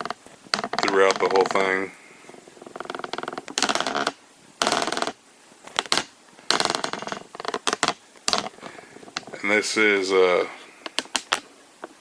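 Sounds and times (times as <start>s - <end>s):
plastic vise clicking and rattling: 10.8s - 11.5s.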